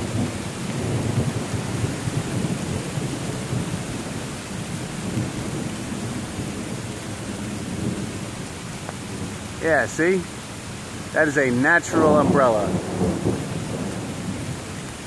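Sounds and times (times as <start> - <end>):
rolling thunder rumble: 0.0 - 8.4, 11.6 - 15.0
rain pouring on leaves: 0.0 - 15.0.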